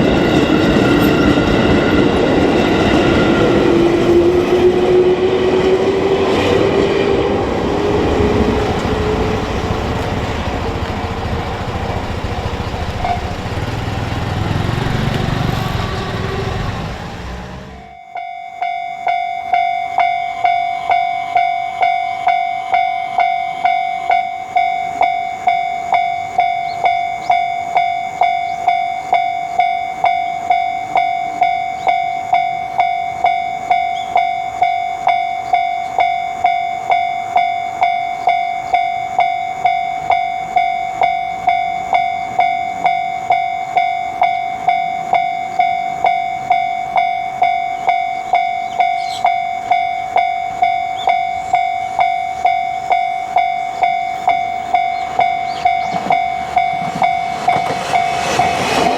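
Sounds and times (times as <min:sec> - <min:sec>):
railroad crossing bell ringing: 0:00.0 - 0:06.0, 0:06.6 - 0:58.9.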